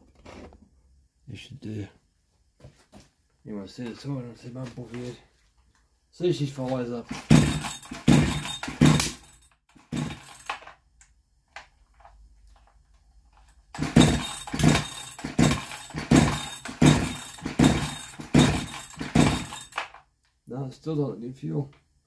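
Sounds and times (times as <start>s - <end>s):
chainsaw being pull-started: 7.0s - 10.7s, 13.7s - 20.0s.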